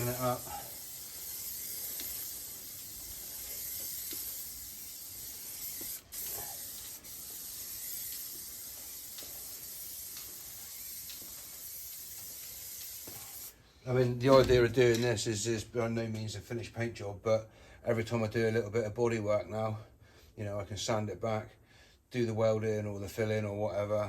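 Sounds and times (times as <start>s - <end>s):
aerosol spray can hissing: 0.0s - 13.6s.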